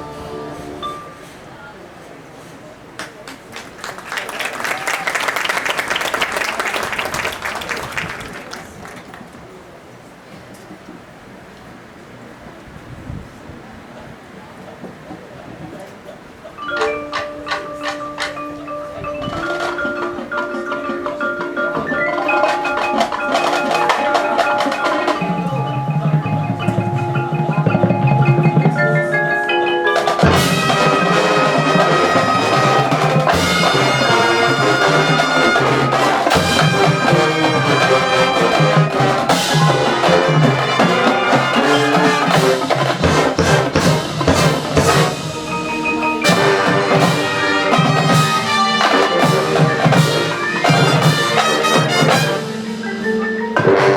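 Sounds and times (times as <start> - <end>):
band chords: 0.0 - 1.3, 16.6 - 53.9
mallet percussion: 0.0 - 1.3, 16.6 - 53.9.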